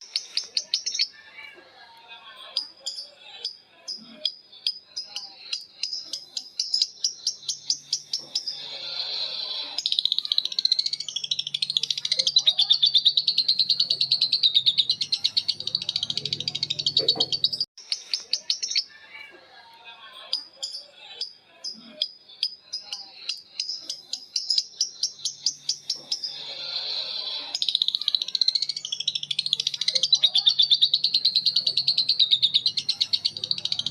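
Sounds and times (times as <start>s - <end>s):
bird chirps: 0.0s - 1.6s, 2.4s - 19.4s, 20.1s - 33.9s
lovebird chattering trill: 9.7s - 19.0s, 27.5s - 33.9s.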